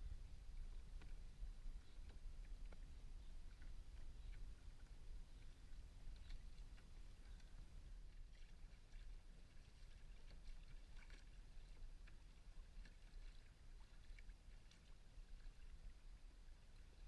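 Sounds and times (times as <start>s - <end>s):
low steady rumble: 0.0s - 17.0s
water splashes and drips: 5.3s - 17.0s.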